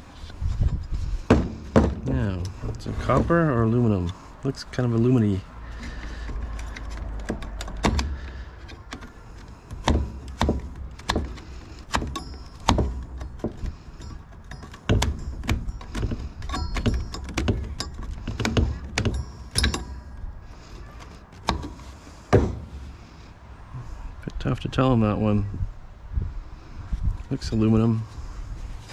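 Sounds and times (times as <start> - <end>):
ringing metal knocks: 1.2 - 4.2, 9.7 - 23.0
metal clanks and clicks: 5.7 - 22.9.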